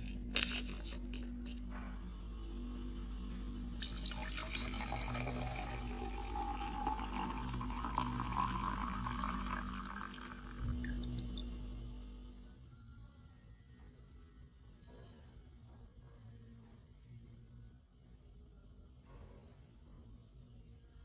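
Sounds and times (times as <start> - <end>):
liquid pouring into a vessel: 0.0 - 12.1
steady low hum: 0.0 - 17.8.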